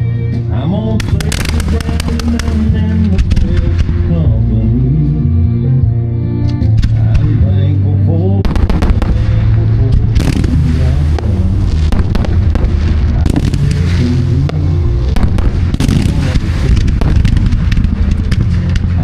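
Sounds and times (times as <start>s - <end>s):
song playing: 0.0s - 19.0s
fireworks popping and banging: 1.0s - 4.1s, 6.8s - 7.4s, 8.4s - 19.0s.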